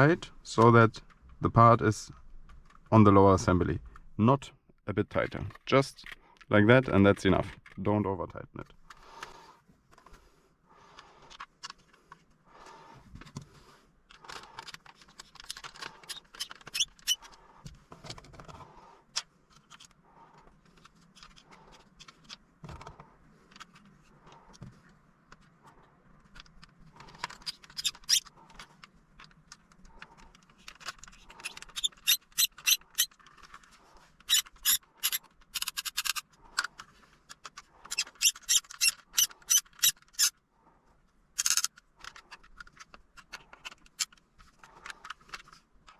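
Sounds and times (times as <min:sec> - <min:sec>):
plastic trim scraping and squeaking: 0:14.1 - 0:25.5, 0:26.2 - 0:40.4, 0:41.4 - 0:45.9
sharp plastic clicks: 0:41.4 - 0:45.5.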